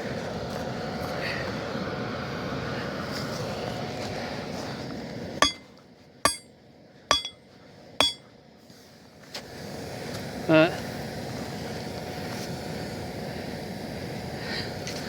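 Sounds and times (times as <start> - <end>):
hammer ringing on metal: 5.4 - 5.6, 6.3 - 6.5, 7.1 - 7.4, 8.0 - 8.2.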